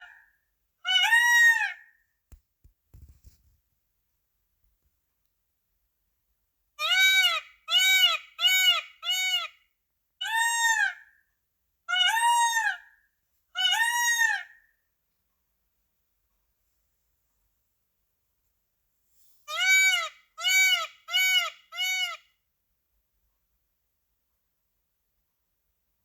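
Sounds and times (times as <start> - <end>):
peacock calling loudly: 0.8 - 2.0, 6.8 - 9.6, 10.2 - 11.2, 11.9 - 13.0, 13.6 - 14.7, 19.5 - 22.4.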